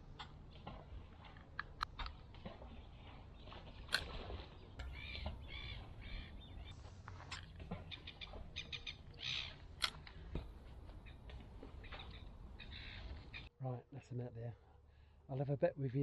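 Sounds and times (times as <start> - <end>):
bird calling: 2.6 - 13.5.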